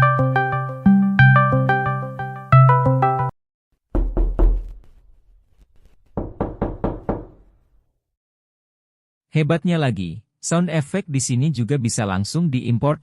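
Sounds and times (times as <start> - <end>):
heavy knocking: 6.2 - 7.4.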